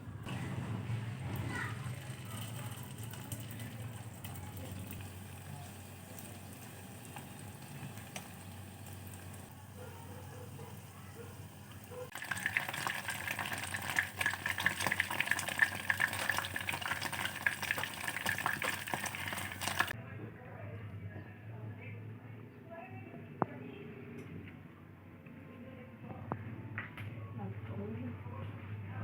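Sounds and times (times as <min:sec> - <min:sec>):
hot oil sizzling and popping: 0:00.3 - 0:09.5, 0:10.7 - 0:20.0.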